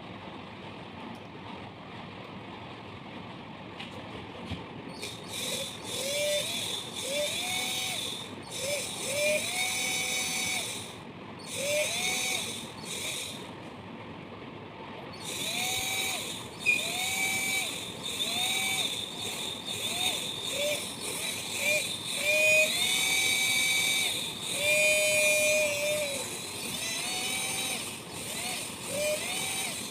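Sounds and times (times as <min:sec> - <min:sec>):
cordless drill motor spinning up: 0:04.9 - 0:13.6, 0:15.1 - 0:29.9.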